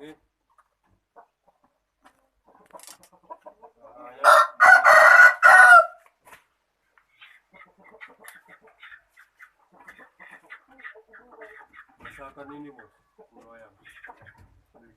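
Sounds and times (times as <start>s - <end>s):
faint chicken clucks: 0.0s - 14.9s
rooster crowing: 4.2s - 6.0s.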